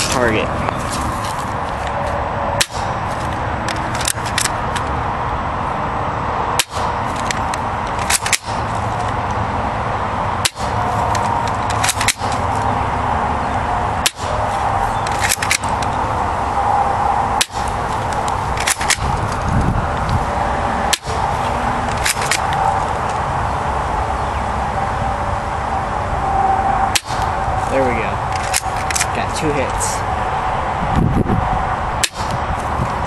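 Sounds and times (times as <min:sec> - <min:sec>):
steady background rush: 0:00.0 - 0:33.0
airsoft rifle shots: 0:10.4 - 0:10.8.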